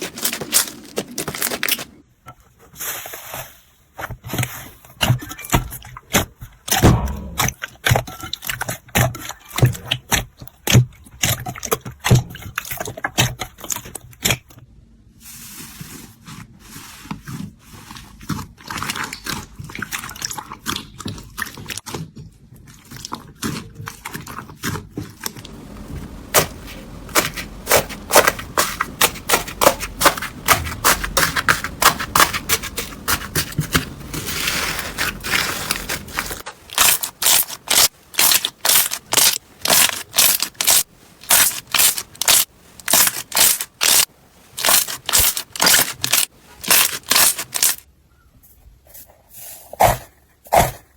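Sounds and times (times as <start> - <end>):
slime crackling and popping: 35.0 - 47.8.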